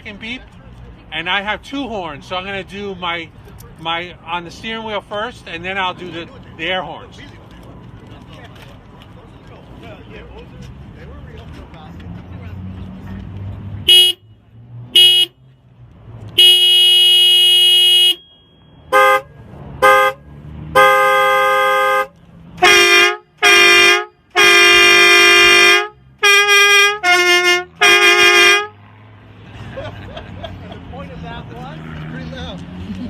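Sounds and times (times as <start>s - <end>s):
car horn beeps: 13.8s - 15.4s, 16.3s - 28.8s
air horn blasts: 13.9s - 14.2s, 14.9s - 15.4s, 16.4s - 28.8s.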